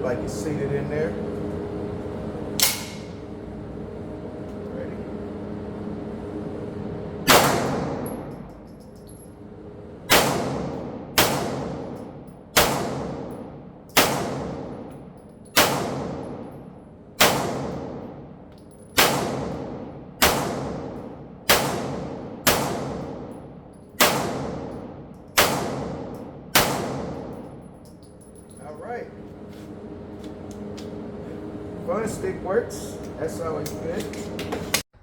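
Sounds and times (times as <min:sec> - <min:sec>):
pistol shots with echo: 0:07.3 - 0:08.1, 0:10.1 - 0:11.9, 0:12.6 - 0:13.4, 0:14.0 - 0:14.8, 0:15.6 - 0:16.4, 0:17.2 - 0:18.0, 0:19.0 - 0:23.3, 0:24.0 - 0:27.4.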